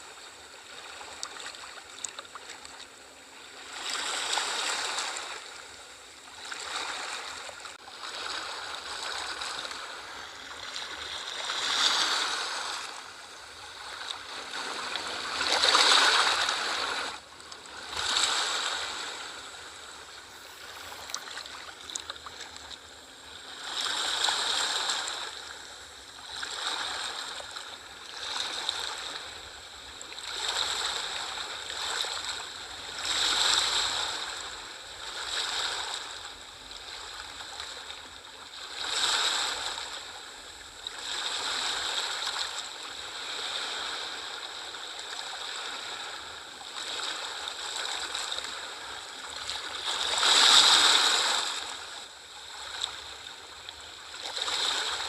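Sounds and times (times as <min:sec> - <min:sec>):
sea waves washing in: 0:06.5 - 0:25.7.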